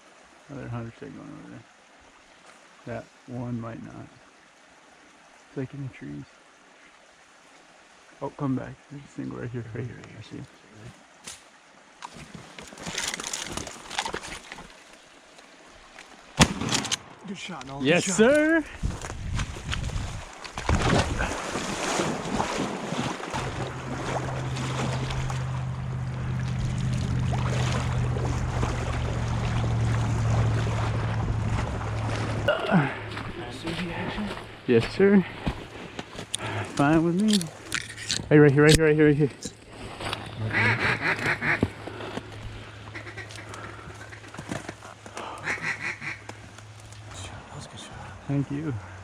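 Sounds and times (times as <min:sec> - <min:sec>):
water noise: 0:00.0 - 0:49.0
wind on microphone: 0:18.6 - 0:21.4
low motor hum: 0:23.3 - 0:33.4
duck quacking: 0:40.4 - 0:41.8, 0:42.8 - 0:44.4, 0:45.4 - 0:46.3.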